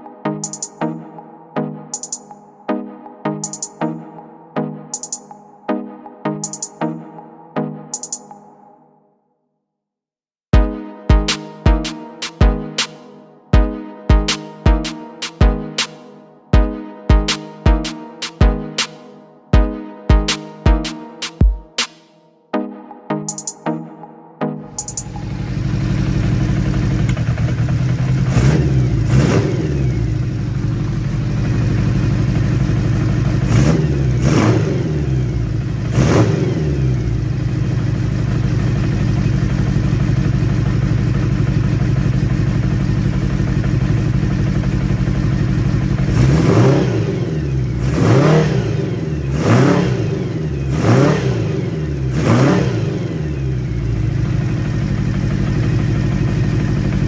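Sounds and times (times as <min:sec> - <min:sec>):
motorcycle engine idling: 0:24.8 - 0:34.3, 0:35.3 - 0:36.0, 0:36.9 - 0:46.4, 0:53.2 - 0:57.0
short throttle revs: 0:25.0 - 0:30.3, 0:33.4 - 0:37.2, 0:46.1 - 0:53.7.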